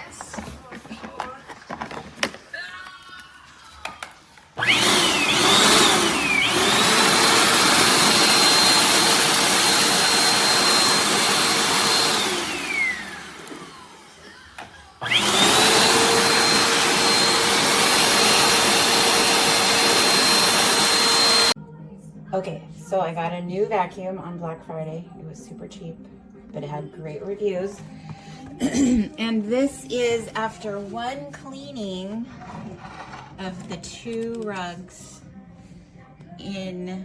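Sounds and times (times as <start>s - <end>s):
vacuum cleaner motor whine: 4.6s - 21.6s.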